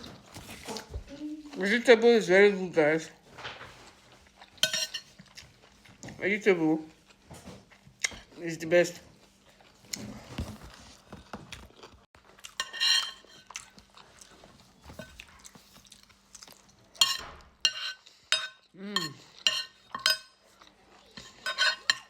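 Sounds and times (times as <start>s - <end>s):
cutlery clinking on a plate: 4.6s - 5.2s, 12.6s - 13.5s, 17.0s - 20.4s, 21.1s - 22.0s.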